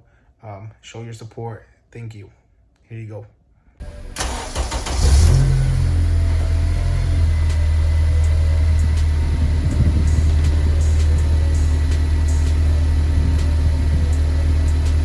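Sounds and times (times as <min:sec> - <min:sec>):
car engine humming: 0:03.8 - 0:15.0.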